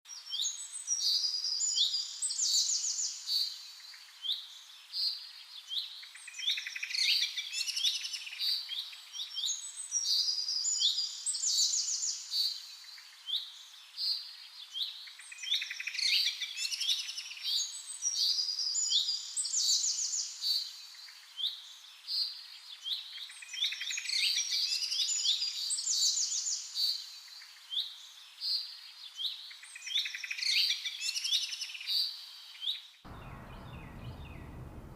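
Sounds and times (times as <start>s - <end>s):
birds singing and chirping: 33.1s - 34.9s.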